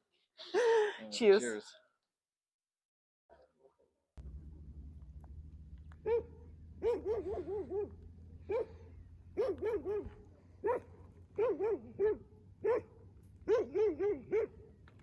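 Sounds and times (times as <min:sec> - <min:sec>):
steady low hum: 0:04.2 - 0:14.8
dog yapping: 0:06.0 - 0:08.8, 0:09.4 - 0:14.6.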